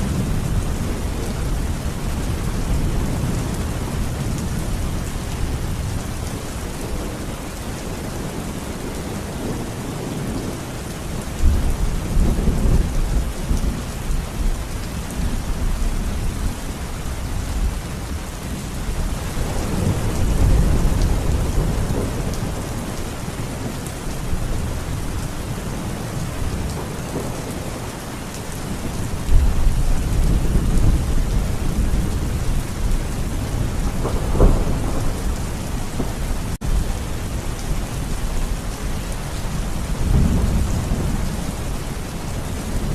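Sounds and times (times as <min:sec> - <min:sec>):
steady rain hissing: 0:00.0 - 0:42.9
low rolls of thunder: 0:18.9 - 0:28.0, 0:28.6 - 0:42.9.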